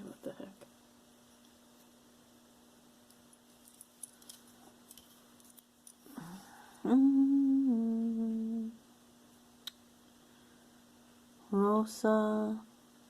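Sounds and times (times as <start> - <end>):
person humming: 6.1 - 8.8.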